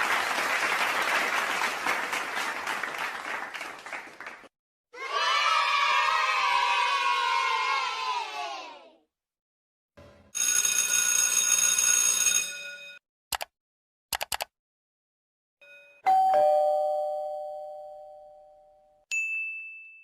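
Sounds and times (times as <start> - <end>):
sharp clicks: 13.3 - 13.5, 14.1 - 14.5
ding-dong doorbell chime: 15.6 - 20.0
short high ding: 15.6 - 20.0.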